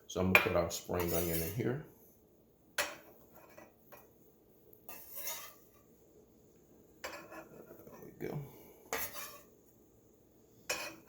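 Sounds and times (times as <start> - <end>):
utensil scraping dish: 1.0 - 1.6, 4.9 - 5.8, 7.0 - 8.1, 8.9 - 9.5, 10.7 - 11.0
utensils clinking against dish: 1.0 - 1.6.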